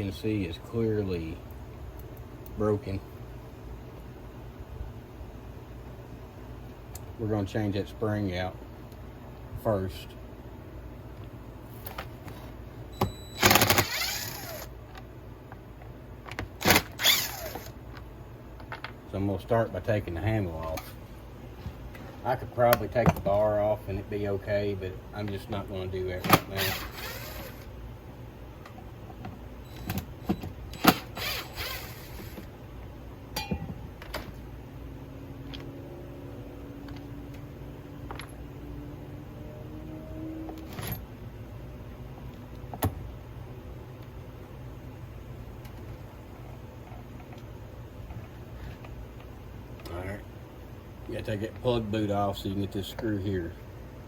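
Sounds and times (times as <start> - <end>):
low background hum: 0.0 - 54.0
chainsaw rattling: 13.4 - 14.7, 26.5 - 27.7.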